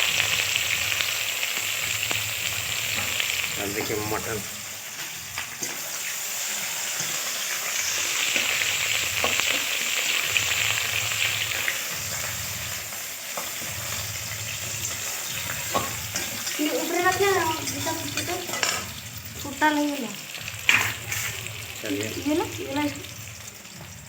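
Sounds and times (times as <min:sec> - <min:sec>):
meat sizzling in a pan: 0:00.0 - 0:24.0.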